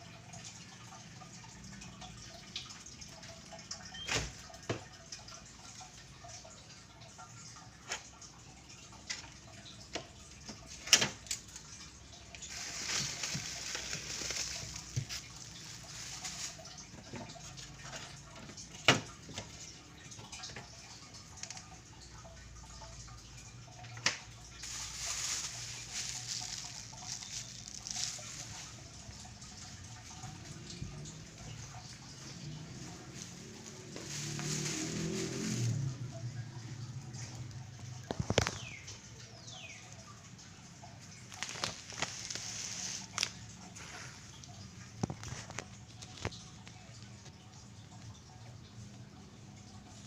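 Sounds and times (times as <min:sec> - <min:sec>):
water running in a sink: 0:00.0 - 0:50.0.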